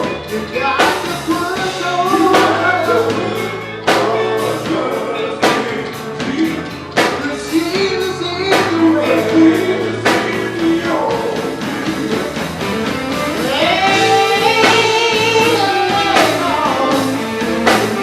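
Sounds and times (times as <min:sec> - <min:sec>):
person singing: 0:00.0 - 0:18.0
rock music: 0:00.0 - 0:18.0
sharp drum hits: 0:02.1 - 0:04.6.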